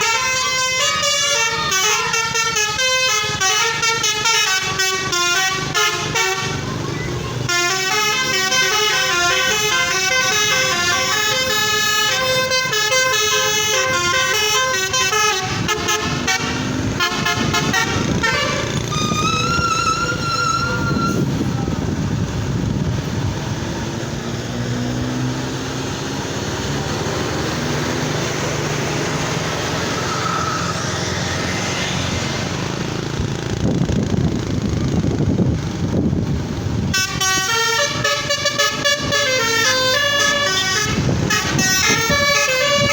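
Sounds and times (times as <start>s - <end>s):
multi-tone air horn melody: 0.0s - 21.5s, 36.9s - 42.9s
vehicle engine and road rumble: 0.0s - 42.9s.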